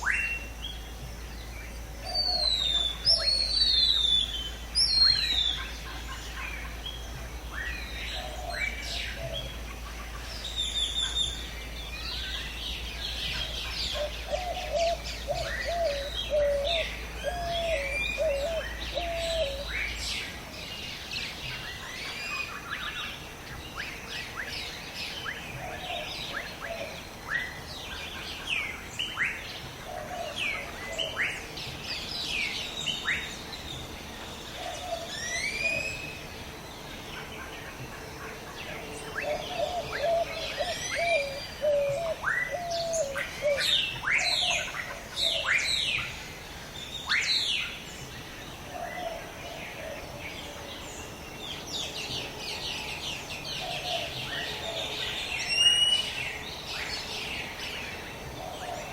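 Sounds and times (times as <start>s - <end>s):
birds chirping and calling: 0.0s - 58.9s
lower bird call: 1.7s - 23.2s, 23.8s - 36.5s, 37.2s - 47.9s.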